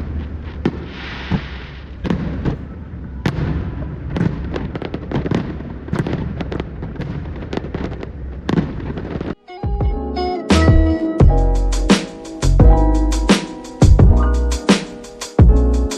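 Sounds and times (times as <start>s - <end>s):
fireworks bangs and crackles: 0.0s - 9.4s
music with plucked notes: 9.4s - 14.8s.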